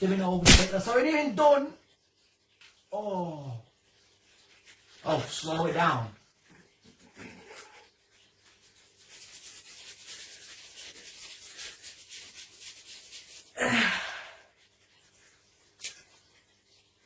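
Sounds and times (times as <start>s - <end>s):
hand rubbing wax strip: 0.2s - 0.9s, 8.4s - 13.6s.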